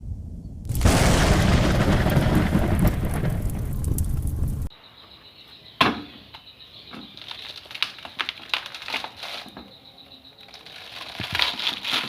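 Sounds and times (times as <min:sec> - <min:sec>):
coconut husk crackling and snapping: 0:00.7 - 0:04.7, 0:07.0 - 0:09.8, 0:10.4 - 0:12.0.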